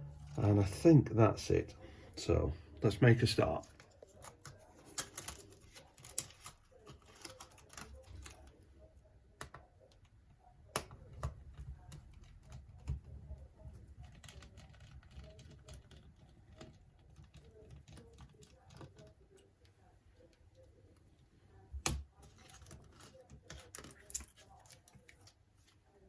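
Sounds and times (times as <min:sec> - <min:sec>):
small tools clicking on plastic: 0:21.8 - 0:25.4.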